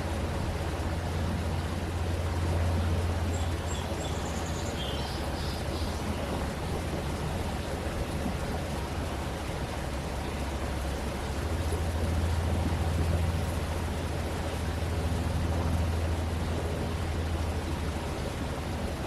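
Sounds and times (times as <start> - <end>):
low continuous rumble: 0.0 - 19.0
stream rushing: 0.0 - 19.0
bird chirping: 3.3 - 6.4.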